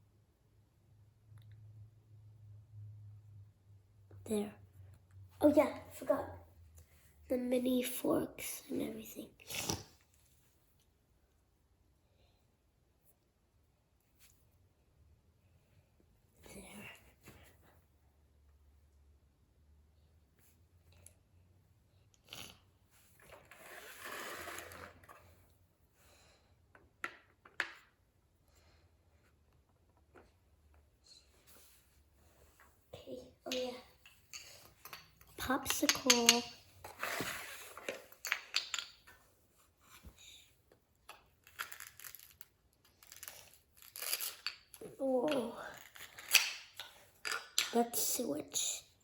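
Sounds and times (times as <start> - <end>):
plastic toys rustling scrape: 23.3 - 25.4, 36.8 - 38.2
plastic toys clicking and tapping: 33.5 - 36.6.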